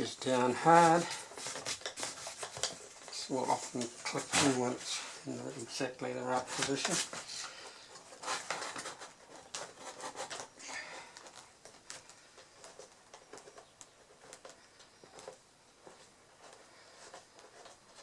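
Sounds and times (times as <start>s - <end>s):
bracket rubbing scraping and clicking: 0.0s - 5.2s.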